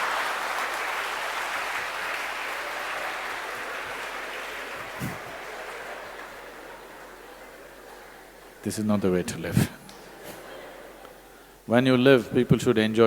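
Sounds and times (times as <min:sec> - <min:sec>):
audience applause: 0:00.0 - 0:09.2.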